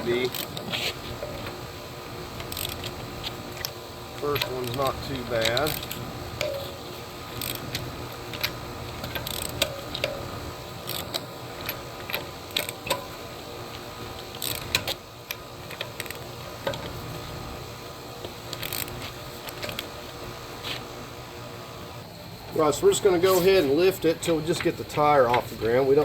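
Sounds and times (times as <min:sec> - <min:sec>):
hand ratchet clicking: 0:00.1 - 0:01.3, 0:02.4 - 0:10.2, 0:10.8 - 0:13.1, 0:14.2 - 0:17.0, 0:18.5 - 0:19.9.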